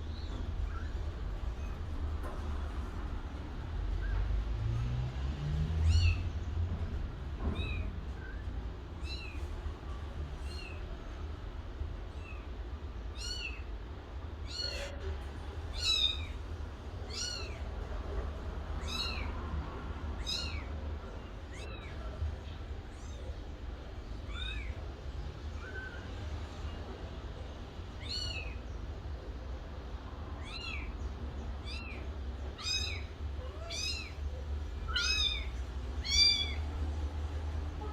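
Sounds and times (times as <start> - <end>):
kitten meowing: 10.4 - 10.8, 13.1 - 13.6, 14.4 - 14.9, 15.7 - 16.4, 17.1 - 17.6, 18.8 - 19.3, 20.2 - 20.7, 28.0 - 28.6, 30.4 - 30.9, 31.6 - 34.2, 34.8 - 36.6.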